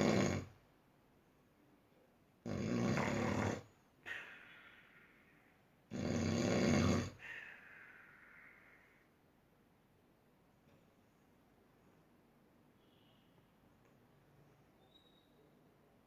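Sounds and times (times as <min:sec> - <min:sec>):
person snoring: 0:00.0 - 0:00.5, 0:02.5 - 0:04.3, 0:05.9 - 0:07.9
soft hissing breath: 0:07.1 - 0:09.2.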